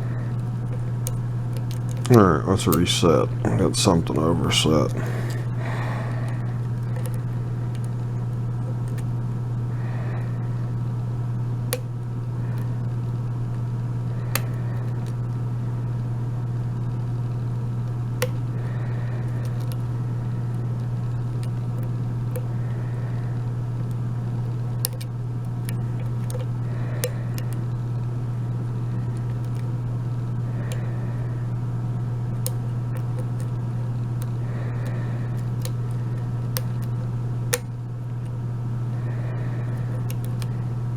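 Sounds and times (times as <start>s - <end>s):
steady low hum: 0.0s - 40.9s
lock pick metallic clicks: 24.8s - 25.1s.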